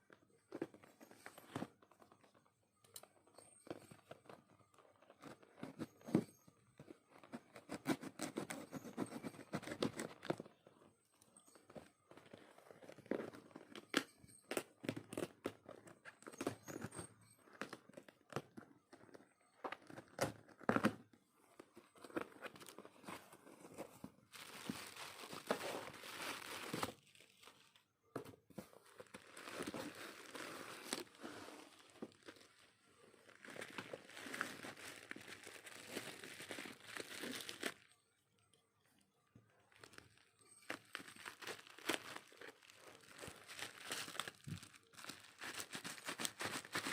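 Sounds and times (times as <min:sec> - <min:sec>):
packaging crinkling and tearing: 0:22.0 - 0:27.8, 0:28.8 - 0:37.9, 0:39.7 - 0:46.9.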